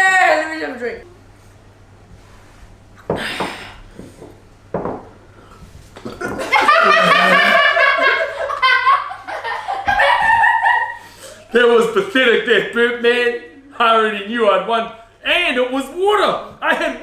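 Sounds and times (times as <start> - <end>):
loud laughter: 6.0 - 11.5.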